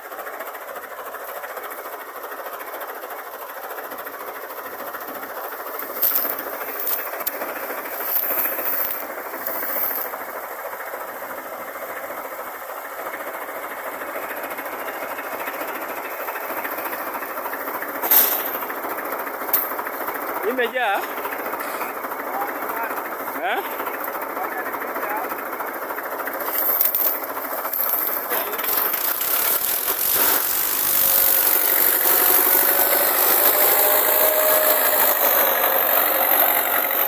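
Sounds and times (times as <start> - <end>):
heavy farm machinery running: 0.1 - 37.0.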